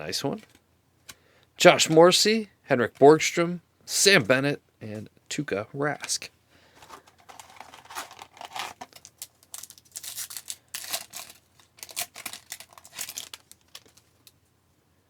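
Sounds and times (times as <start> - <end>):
wrapper crinkling and tearing: 6.8 - 14.4.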